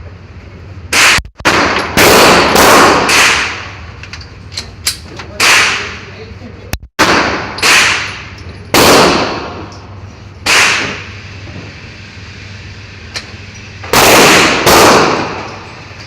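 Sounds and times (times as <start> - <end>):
pistol shots with echo: 0.9 - 3.8, 5.4 - 6.0, 7.0 - 9.6, 10.4 - 11.1, 13.9 - 15.6.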